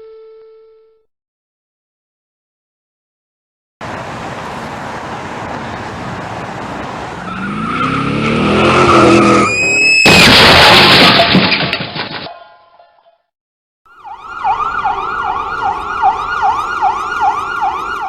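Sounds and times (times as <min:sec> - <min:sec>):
car engine accelerating: 0:03.8 - 0:09.6
loud car crash: 0:07.4 - 0:12.3
debris crunching and clattering: 0:10.0 - 0:12.4.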